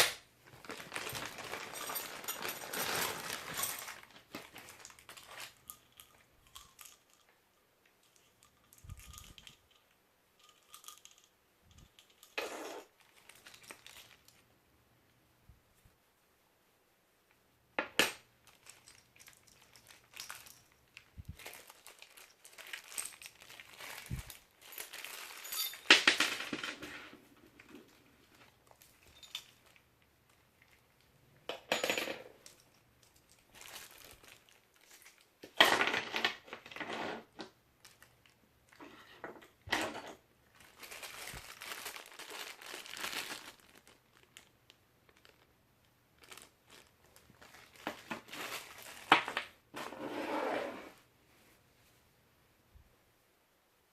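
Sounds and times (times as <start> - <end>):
packaging rustling: 0.5 - 6.2, 12.0 - 14.4, 18.4 - 30.8, 33.2 - 35.3, 40.5 - 45.5, 46.2 - 49.9
metal parts clinking: 0.8 - 7.4, 8.0 - 14.4, 21.4 - 27.1, 29.0 - 29.8.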